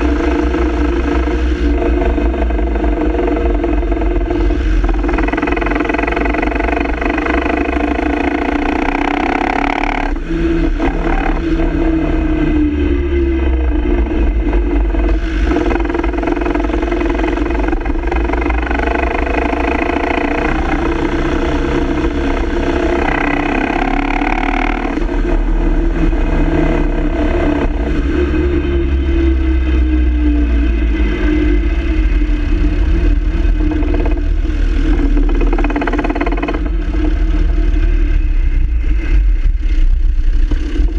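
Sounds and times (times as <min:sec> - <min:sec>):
diesel engine rumbling while driving: 0:00.0 - 0:40.9.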